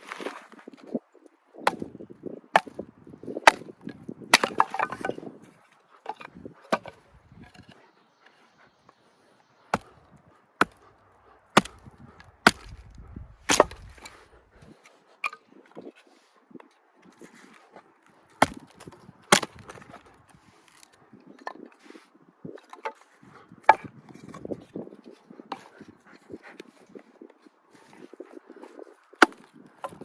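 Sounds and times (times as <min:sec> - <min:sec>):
firewood being chopped: 0:01.6 - 0:03.7, 0:04.3 - 0:05.2, 0:10.6 - 0:10.8, 0:11.6 - 0:14.2, 0:18.4 - 0:20.0, 0:29.2 - 0:30.0.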